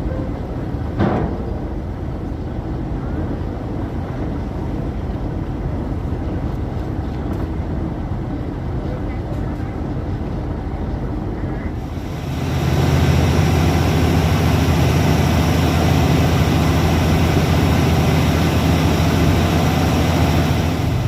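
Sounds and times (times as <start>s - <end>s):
low engine drone: 0.0s - 21.0s
rushing noise: 11.8s - 21.0s.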